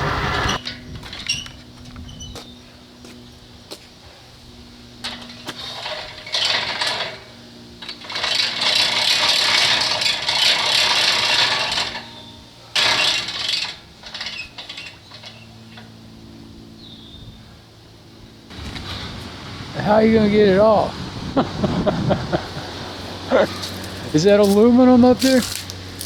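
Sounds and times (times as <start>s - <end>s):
low engine hum: 0.0s - 6.2s, 15.0s - 26.0s
rattling and scraping: 5.0s - 16.0s, 21.4s - 26.0s.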